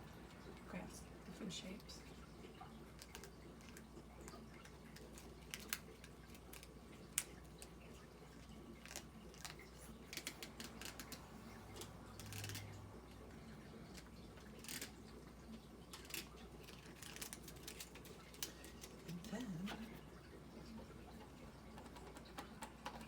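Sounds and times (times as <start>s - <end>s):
plastic pieces clicking: 3.0s - 7.8s, 8.8s - 12.8s, 13.9s - 15.0s, 15.9s - 19.3s.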